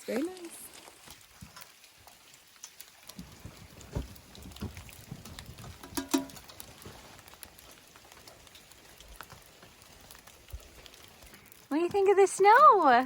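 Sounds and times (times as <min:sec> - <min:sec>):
wet snow and rain pattering: 0:00.0 - 0:13.0
soft low thumps: 0:03.2 - 0:06.0.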